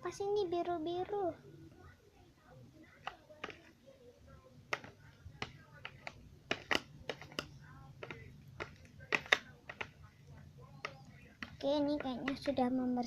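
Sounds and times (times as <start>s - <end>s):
slime being stirred: 3.0s - 3.8s, 4.6s - 12.9s.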